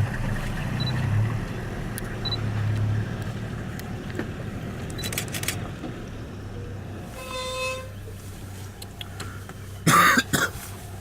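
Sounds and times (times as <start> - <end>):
vehicle engine idling: 0.0 - 11.0
sharp clicks: 4.8 - 5.7.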